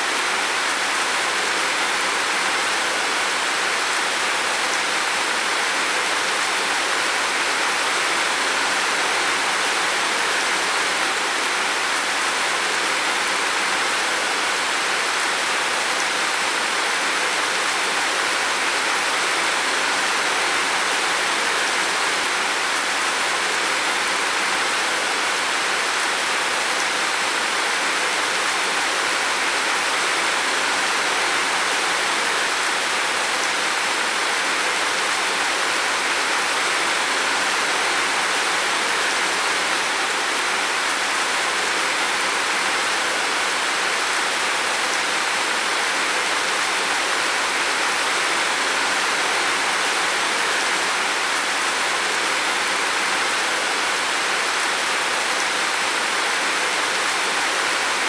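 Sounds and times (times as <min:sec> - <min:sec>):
heavy rain on a roof: 0:00.0 - 0:58.0.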